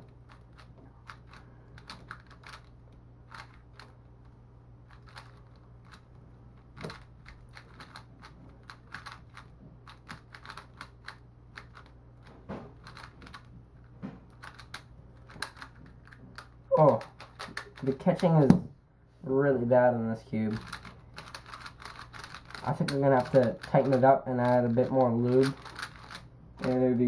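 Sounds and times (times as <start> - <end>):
puzzle cube plastic clacks: 6.8 - 13.5, 20.5 - 26.8.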